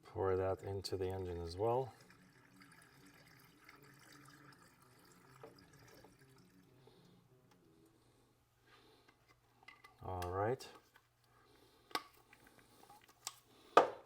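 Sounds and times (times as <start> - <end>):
faint low hum: 0.0 - 13.6.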